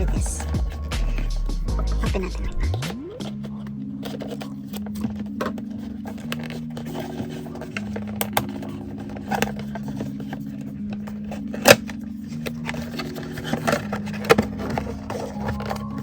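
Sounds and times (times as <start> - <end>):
soft background music: 0.0 - 16.0
packaging clicks and scrapes: 3.2 - 16.0.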